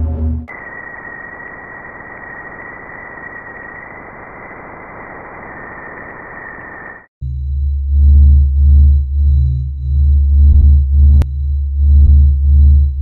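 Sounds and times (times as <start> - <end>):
loud deep droning: 0.0 - 0.6, 7.2 - 13.0
radio static hiss: 0.5 - 7.1
steady high whistle tone: 0.5 - 13.0.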